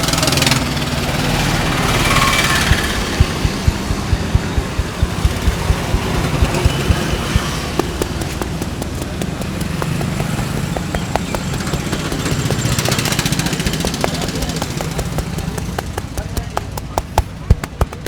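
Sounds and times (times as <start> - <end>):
hands thudding in head massage: 2.2 - 18.0
light quick hand taps: 2.2 - 18.0
steady low hum: 2.3 - 12.7.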